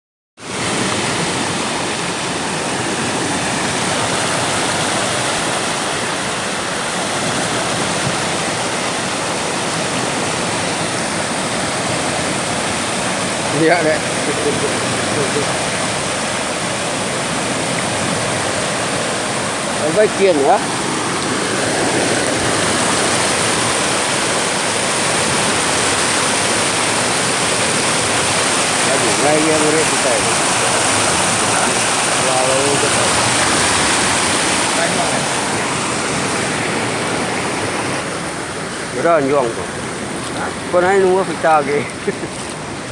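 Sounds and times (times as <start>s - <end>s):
waterfall rushing: 0.4s - 42.9s
liquid cascading down: 10.0s - 42.8s.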